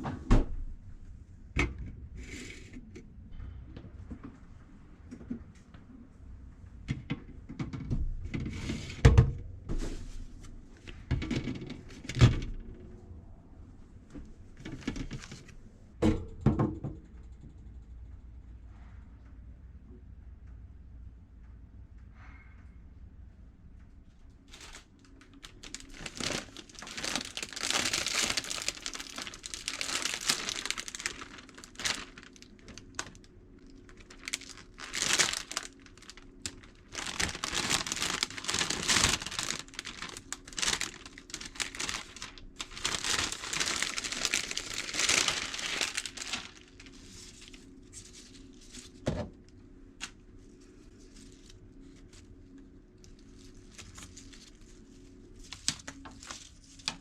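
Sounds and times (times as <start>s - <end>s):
faint steady hum: 0.0s - 57.0s
packaging crinkling: 24.5s - 49.0s, 55.4s - 57.0s.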